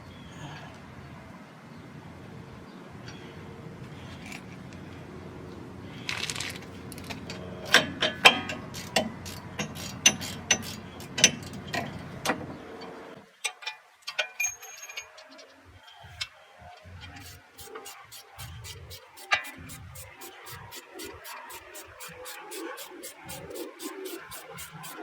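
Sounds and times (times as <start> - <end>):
ratchet clicking: 17.0 - 25.0
metal scrape: 17.1 - 25.0.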